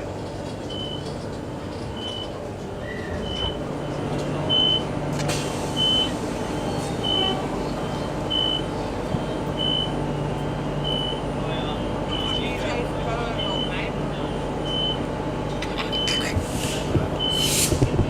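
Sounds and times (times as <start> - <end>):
low hum of stopped train: 0.0 - 18.0
train door signal beeping: 0.7 - 1.2, 1.9 - 5.0, 5.6 - 10.0, 10.8 - 11.3, 12.0 - 13.9, 14.6 - 15.1, 17.2 - 17.6.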